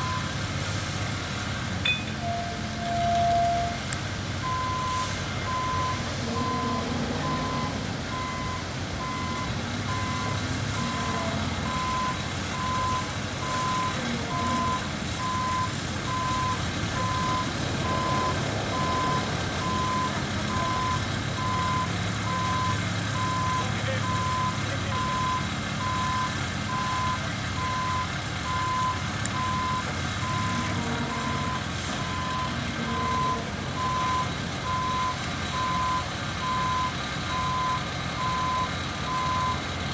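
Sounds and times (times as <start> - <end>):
diesel engine rumble: 0.0 - 39.9
backup alarm beeping: 1.9 - 3.8, 4.4 - 39.6.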